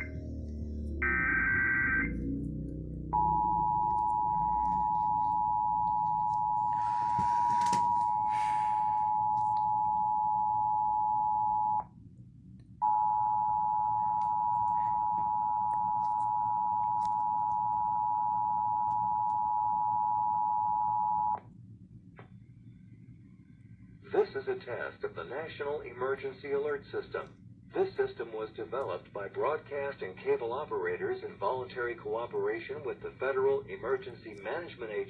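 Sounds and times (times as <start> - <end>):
two-tone emergency alert signal: 0.0 - 11.8, 12.8 - 21.4.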